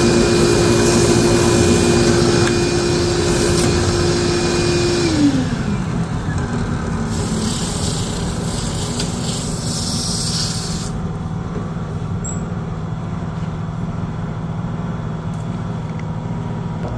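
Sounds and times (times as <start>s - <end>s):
electric motor winding down: 0.0s - 11.0s
steady low hum: 0.0s - 16.9s
hiss: 7.1s - 11.0s.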